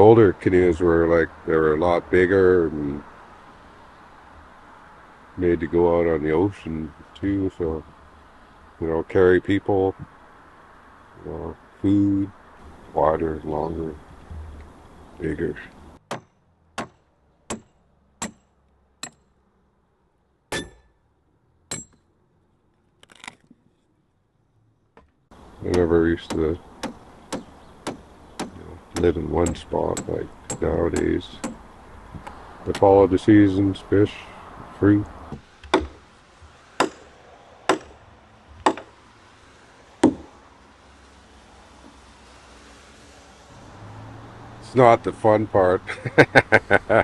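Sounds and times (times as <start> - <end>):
axe chopping wood: 16.0 - 18.4, 20.5 - 20.9, 25.7 - 29.6, 35.6 - 36.0, 36.8 - 37.1, 37.7 - 38.0, 38.6 - 38.9, 40.0 - 40.4
hand tool chopping wood: 35.6 - 36.0, 36.8 - 37.1, 37.7 - 38.0, 38.6 - 38.9, 40.0 - 40.3.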